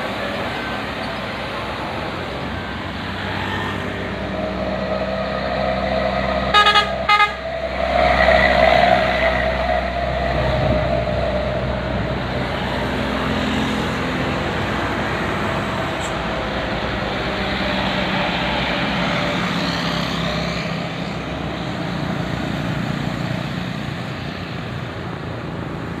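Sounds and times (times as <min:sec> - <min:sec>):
vehicle engines running: 0:00.0 - 0:26.0
bus horn: 0:06.3 - 0:07.7.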